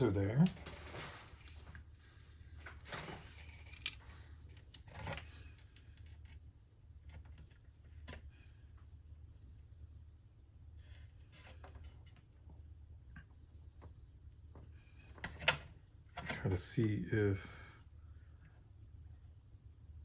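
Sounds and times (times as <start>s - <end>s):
faint low hum: 0.0s - 20.0s
plastic parts clicking and rustling: 2.6s - 6.4s.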